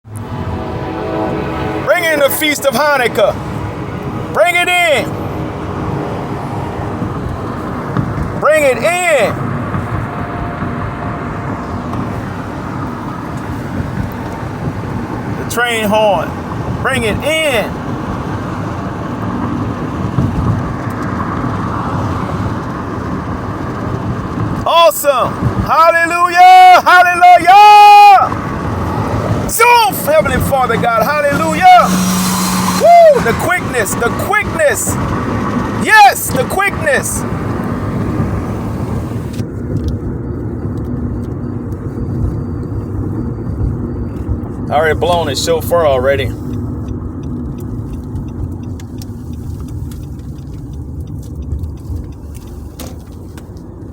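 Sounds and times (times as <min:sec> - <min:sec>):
low vehicle rumble: 0:00.0 - 0:53.9
train rumbling: 0:25.3 - 0:40.6.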